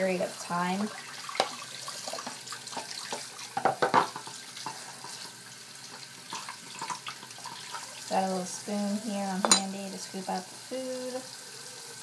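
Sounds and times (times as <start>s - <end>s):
tap water running into sink: 0.0s - 12.0s
bowl knocking and clinking: 9.4s - 9.7s.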